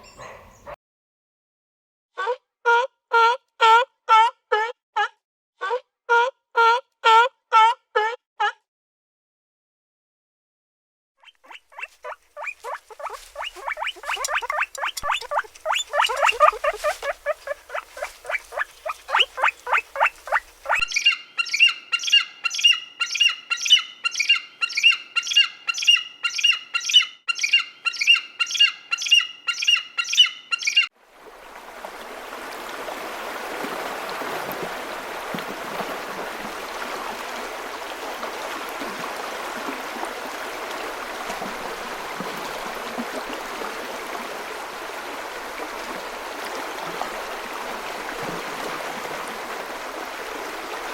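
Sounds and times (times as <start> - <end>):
rapid animal calls: 11.3 - 30.9
running water: 11.5 - 21.0, 31.0 - 50.9.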